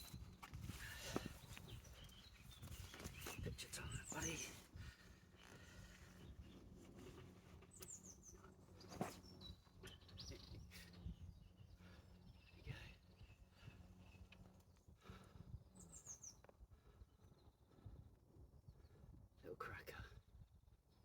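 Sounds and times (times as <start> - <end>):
songbird chirping: 0.0 - 4.7.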